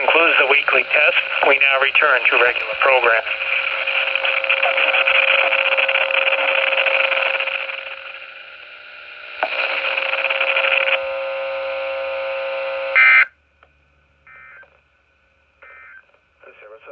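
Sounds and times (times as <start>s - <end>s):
radio hiss: 0.0s - 13.3s, 14.3s - 14.8s, 15.6s - 16.9s
steady buzz: 0.0s - 13.4s.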